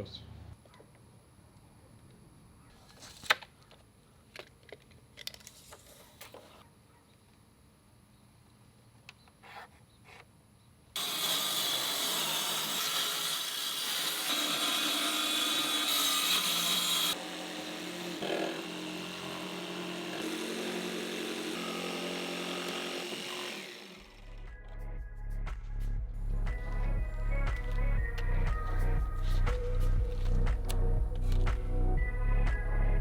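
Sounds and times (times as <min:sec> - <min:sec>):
electric power saw cutting wood: 0:11.0 - 0:24.5.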